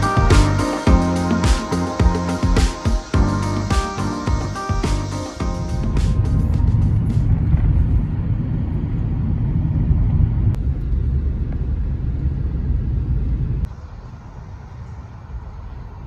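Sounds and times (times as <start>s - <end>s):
car road and engine rumble: 5.4s - 16.0s.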